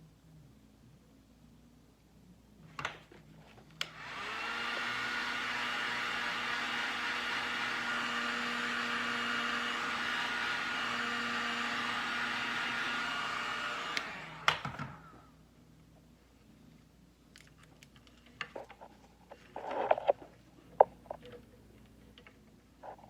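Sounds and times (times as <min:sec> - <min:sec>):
heat gun whine and airflow: 0:03.8 - 0:15.2.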